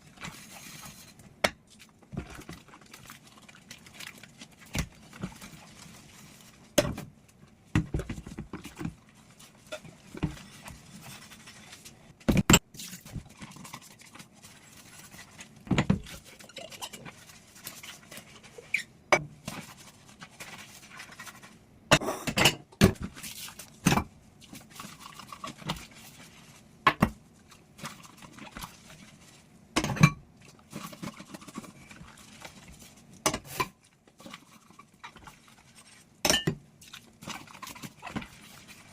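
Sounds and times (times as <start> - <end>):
dishes and utensils clinking: 36.3 - 36.6.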